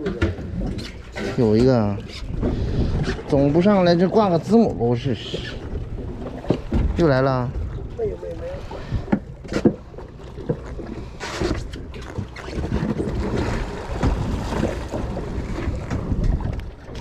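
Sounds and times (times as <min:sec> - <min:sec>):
sea water: 0:00.0 - 0:17.0
wind on microphone: 0:01.5 - 0:09.2, 0:11.4 - 0:17.0.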